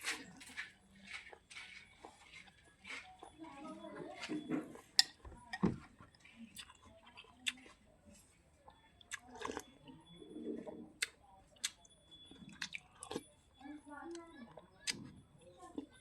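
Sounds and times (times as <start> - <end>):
person chewing and slurping noodles: 0.0 - 3.4, 6.0 - 8.3, 9.0 - 13.3.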